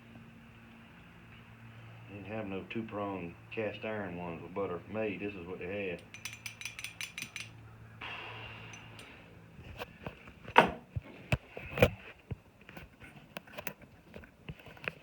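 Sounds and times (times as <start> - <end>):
metal tools knocking and clicking: 6.0 - 7.6.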